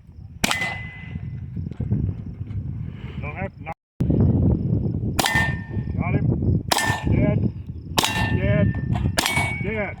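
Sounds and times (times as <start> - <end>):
steel target clanging: 0.4 - 1.3, 5.2 - 5.9, 6.7 - 7.4, 8.0 - 10.0.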